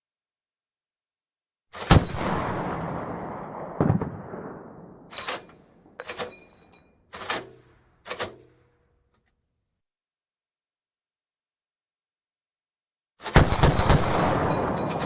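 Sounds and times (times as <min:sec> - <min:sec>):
heavy gunshots with echo: 0:01.8 - 0:06.0, 0:13.3 - 0:15.0.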